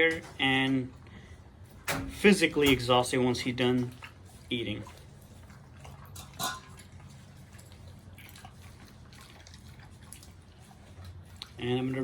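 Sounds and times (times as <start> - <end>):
dog chewing meat: 2.6 - 12.0.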